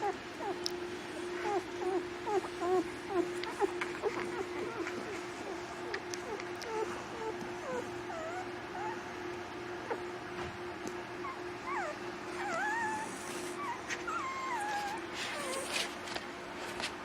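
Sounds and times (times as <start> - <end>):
puppies whimpering and whining: 0.0 - 10.2, 11.0 - 16.2
steady low hum: 0.0 - 17.0.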